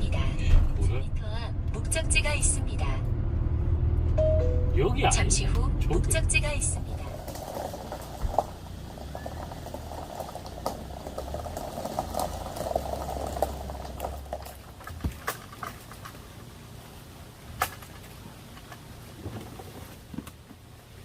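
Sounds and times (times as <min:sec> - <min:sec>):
low engine hum: 0:00.0 - 0:21.0
tyres crunching on gravel: 0:06.1 - 0:21.0.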